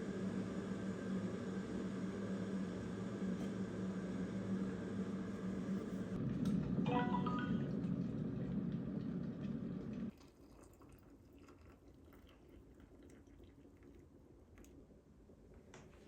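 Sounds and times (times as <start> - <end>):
kitchen appliance humming: 0.0 - 10.8.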